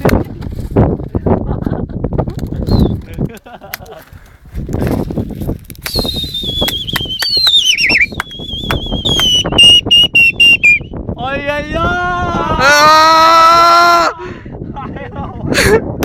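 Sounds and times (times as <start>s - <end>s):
rough rustling background: 0.0s - 9.1s
person whistling shrilly: 5.8s - 11.0s.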